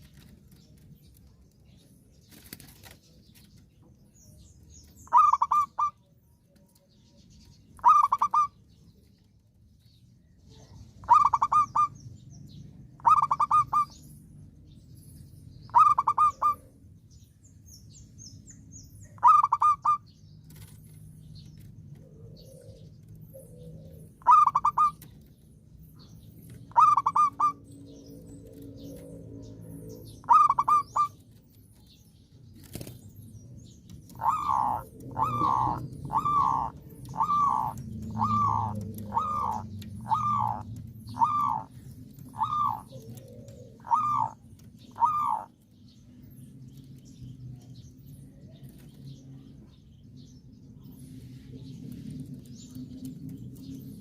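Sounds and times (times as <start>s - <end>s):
dove cooing: 5.0s - 6.1s, 7.8s - 8.6s, 11.0s - 12.0s, 13.0s - 14.0s, 15.7s - 16.7s, 19.2s - 20.0s, 22.1s - 25.1s, 26.5s - 27.7s, 30.1s - 31.2s, 34.0s - 45.5s.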